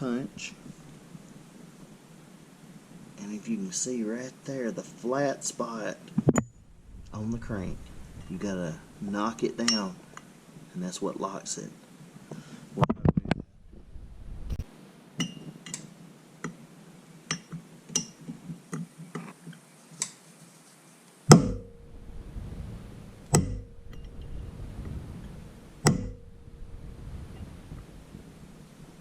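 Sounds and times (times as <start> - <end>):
hammer blows on metal punch: 21.3 - 27.9.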